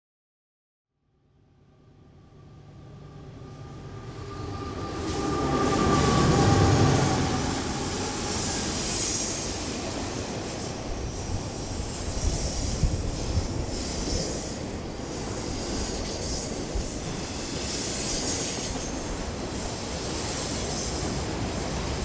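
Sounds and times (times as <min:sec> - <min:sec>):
train rumbling over bridge: 0:01.8 - 0:22.0
high wheel squeal: 0:03.3 - 0:14.4.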